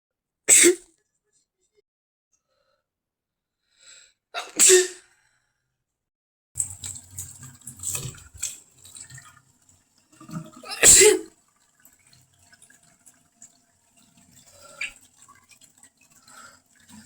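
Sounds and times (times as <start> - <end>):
person sneezing: 0.5 - 0.8, 4.4 - 5.1, 10.7 - 11.3.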